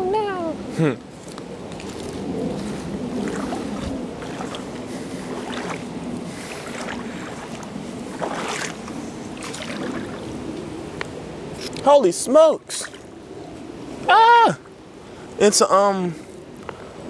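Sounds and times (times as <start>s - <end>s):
wind on microphone: 0.0s - 11.8s
creek water rushing over rocks: 3.2s - 10.6s.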